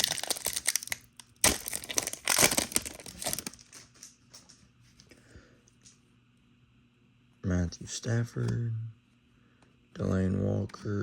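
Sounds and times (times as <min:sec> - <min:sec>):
foil wrapper crinkling and tearing: 0:00.0 - 0:03.9.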